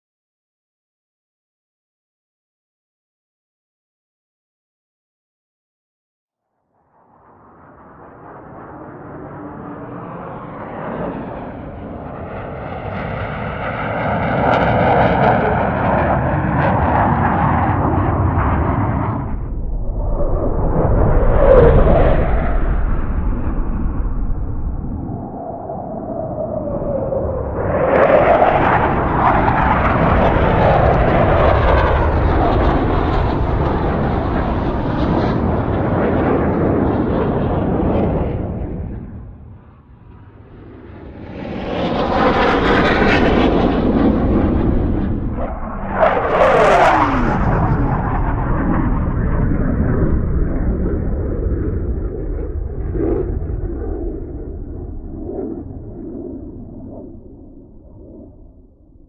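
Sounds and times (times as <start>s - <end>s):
loud roar with wavering pitch: 15.4s - 58.6s.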